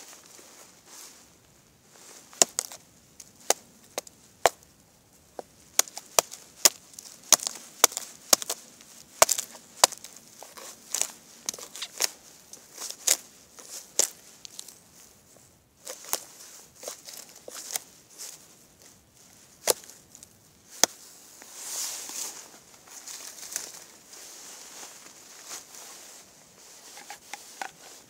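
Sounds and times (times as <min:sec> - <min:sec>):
wood chopping strikes: 0:05.8 - 0:08.6, 0:09.2 - 0:10.1.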